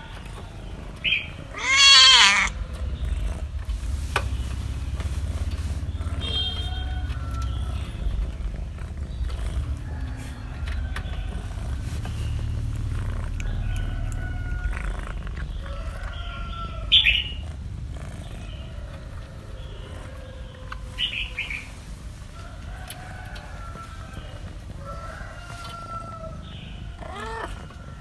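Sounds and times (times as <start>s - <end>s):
cats meowing faintly: 0.0s - 2.8s, 25.4s - 28.0s
loud high-pitched call: 1.6s - 2.5s.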